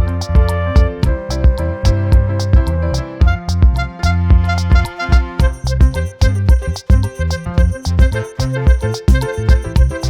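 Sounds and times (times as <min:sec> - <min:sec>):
upbeat music with steady beat: 0:00.0 - 0:10.0.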